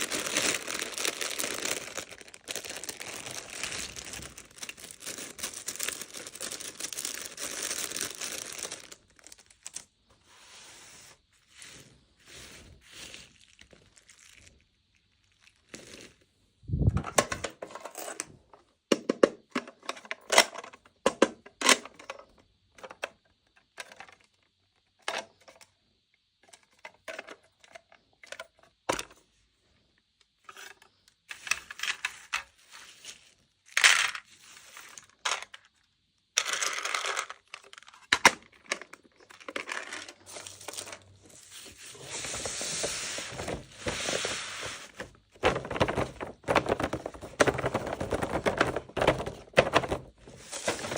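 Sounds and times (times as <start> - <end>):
wrapping crinkling and tearing: 0.0 - 9.9, 12.7 - 16.2, 36.6 - 50.9
plastic pieces clicking: 36.4 - 40.9.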